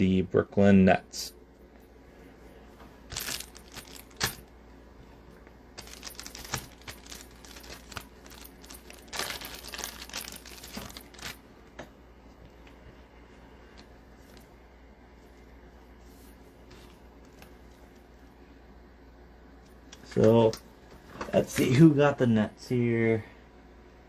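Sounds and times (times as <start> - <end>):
plastic packaging crinkling: 3.1 - 4.4, 5.8 - 11.4.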